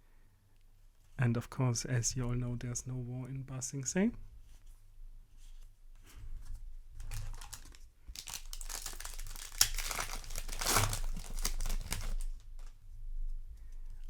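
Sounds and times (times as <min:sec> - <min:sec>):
plastic wrapper crinkling and tearing: 0:07.0 - 0:12.8.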